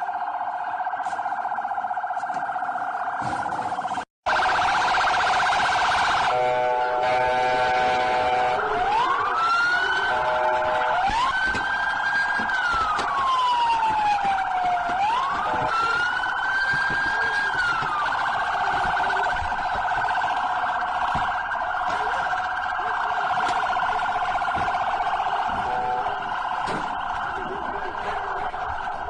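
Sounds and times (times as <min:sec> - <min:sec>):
police siren wail: 0:00.0 - 0:29.0
police siren yelp: 0:00.0 - 0:29.0
multi-tone horn blast: 0:06.3 - 0:08.9.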